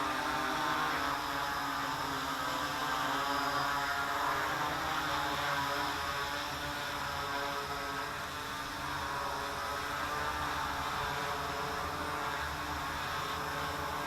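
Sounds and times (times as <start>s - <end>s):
quadcopter propellers whirring: 0.0s - 14.0s.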